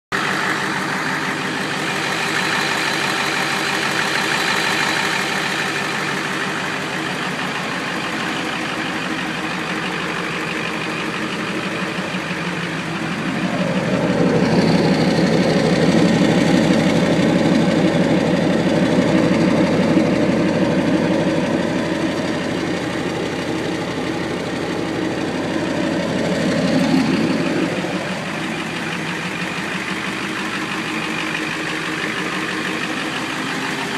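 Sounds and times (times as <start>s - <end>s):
diesel engine idling with tick: 0.1s - 33.9s.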